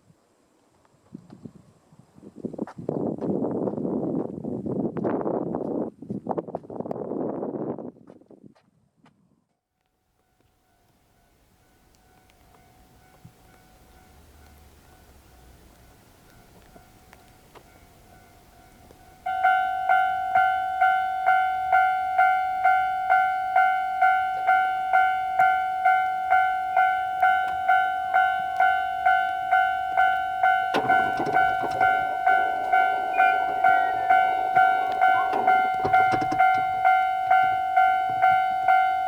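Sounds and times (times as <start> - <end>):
level crossing warning bell: 10.3 - 39.0.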